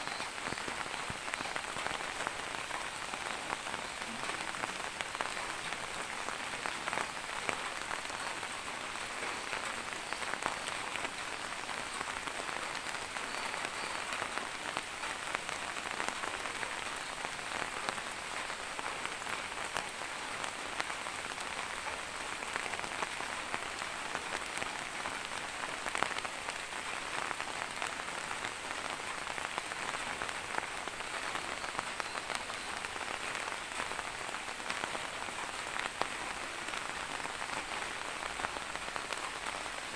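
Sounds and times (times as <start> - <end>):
rain falling: 0.0 - 39.9
raindrops pattering on surfaces: 0.0 - 39.9.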